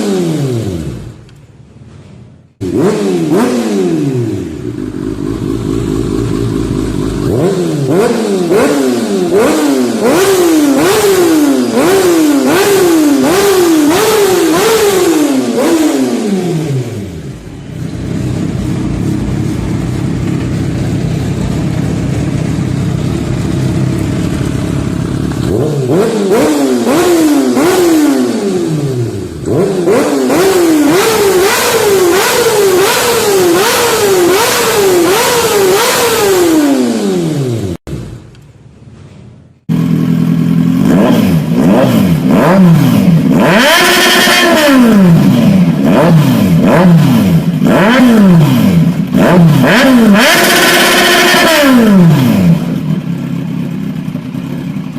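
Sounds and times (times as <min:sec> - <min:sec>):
motorcycle engine revving: 0:00.0 - 0:01.4, 0:02.6 - 0:38.4, 0:39.5 - 0:54.9
motorcycle engine idling: 0:04.2 - 0:08.1, 0:16.5 - 0:27.8, 0:37.6 - 0:43.4, 0:50.7 - 0:54.9.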